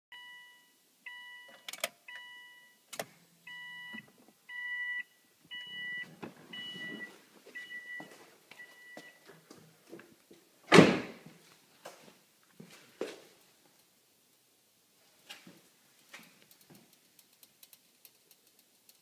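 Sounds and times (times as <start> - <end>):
car warning chime beeping: 0.1 - 9.2
sharp clicks: 16.4 - 19.0.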